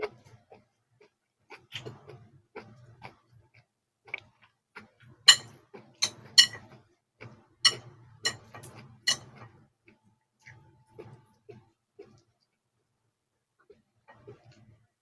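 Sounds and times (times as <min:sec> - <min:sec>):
sharp clicks and clinks: 0:05.3 - 0:06.6, 0:07.7 - 0:09.2.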